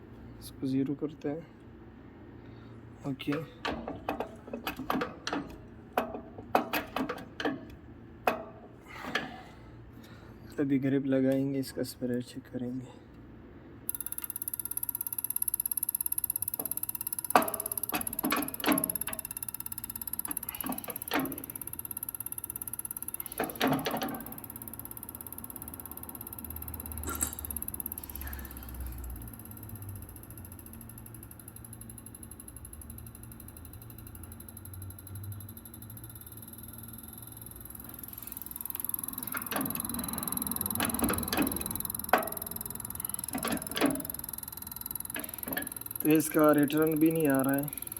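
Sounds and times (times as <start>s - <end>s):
machine hum: 13.7s - 47.9s
metal parts clicking and knocking: 16.4s - 25.1s, 37.8s - 47.9s.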